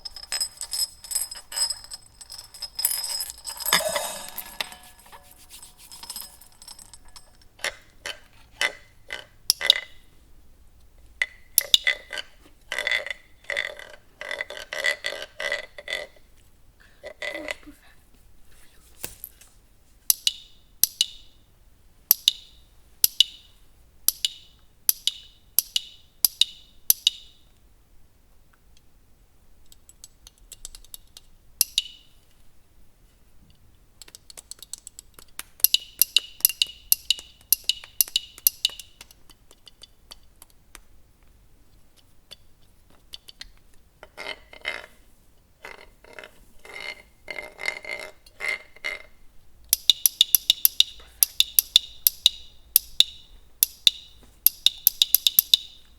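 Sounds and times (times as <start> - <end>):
rattling clatter: 0.0 - 8.2
sharp clinking taps: 31.6 - 32.1, 35.6 - 39.9, 49.7 - 55.9.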